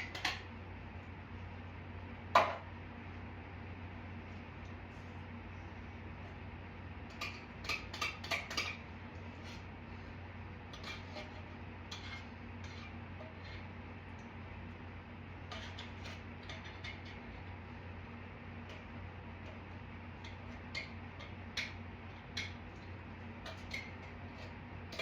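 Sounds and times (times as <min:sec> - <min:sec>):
steady low hum: 0:00.0 - 0:25.0
spoon scraping and tapping bowl: 0:07.1 - 0:08.8, 0:15.5 - 0:17.3, 0:23.4 - 0:25.0.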